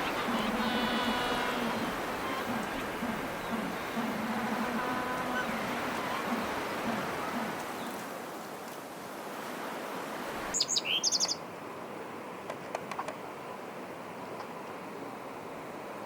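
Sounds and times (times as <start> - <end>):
steady rushing background noise: 0.0 - 10.6
bird chirping: 10.6 - 11.4.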